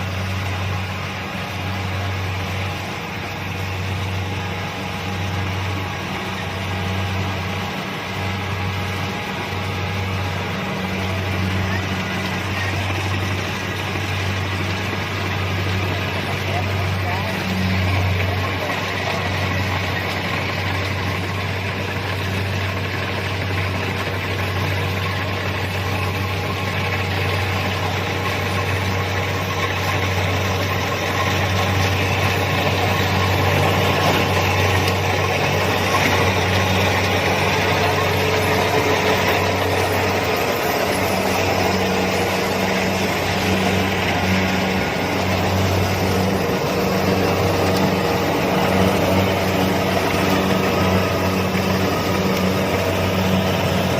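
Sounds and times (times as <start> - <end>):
diesel engine drone: 0.0 - 53.9
machinery noise: 0.0 - 53.9.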